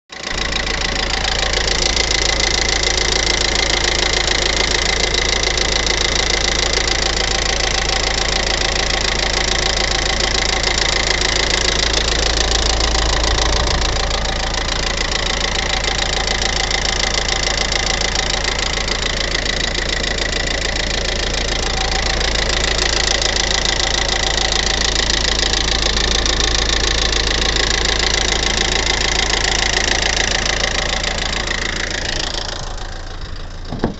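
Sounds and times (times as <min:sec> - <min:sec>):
car engine idling: 0:00.1 - 0:33.9
rapid even engine ticking: 0:00.1 - 0:33.9.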